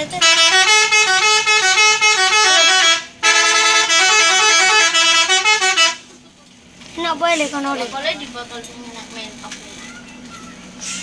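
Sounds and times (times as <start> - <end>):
bus horn playing tune: 0.1 - 6.1.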